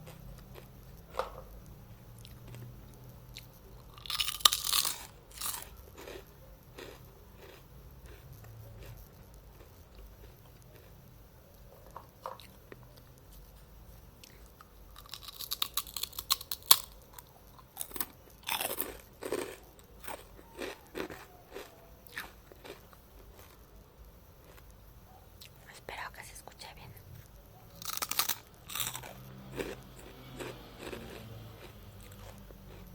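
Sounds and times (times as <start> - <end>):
crunchy snack bite: 2.2 - 11.0, 14.3 - 23.7, 27.7 - 32.9
chewing: 2.2 - 13.6, 14.2 - 23.7, 27.2 - 32.9.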